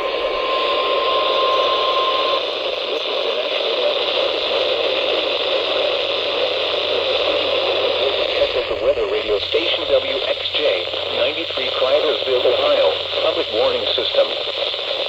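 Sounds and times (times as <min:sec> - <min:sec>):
warning alarm tone: 0:00.0 - 0:02.6
radio static hiss: 0:00.0 - 0:15.0.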